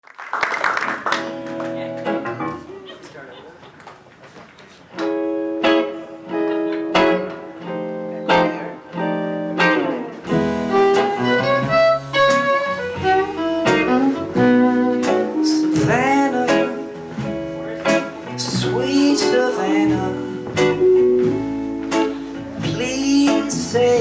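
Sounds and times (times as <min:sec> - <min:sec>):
live band playing: 0:05.0 - 0:24.0
acoustic guitar strumming: 0:05.1 - 0:24.0.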